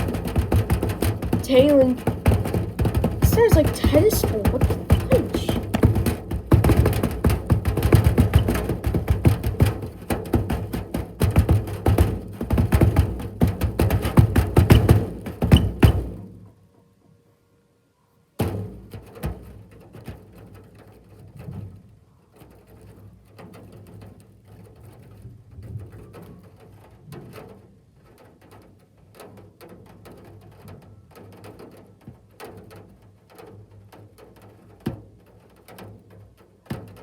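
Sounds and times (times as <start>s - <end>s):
hailstones hammering on roof: 0.0s - 16.2s.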